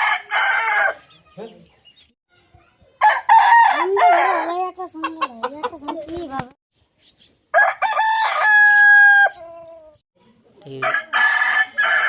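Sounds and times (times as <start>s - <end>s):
rooster crowing: 0.0s - 1.0s, 7.5s - 9.8s, 10.8s - 12.0s.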